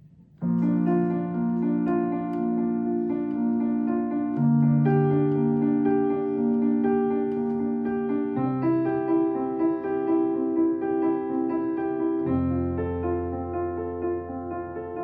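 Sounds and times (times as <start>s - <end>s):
piano playing slow chords: 0.0s - 15.0s.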